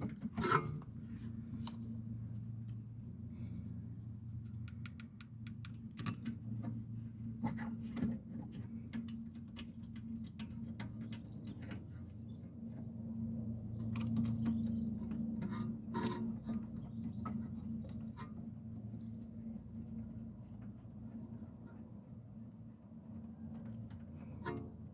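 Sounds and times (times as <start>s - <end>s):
steady low hum: 0.0s - 24.9s.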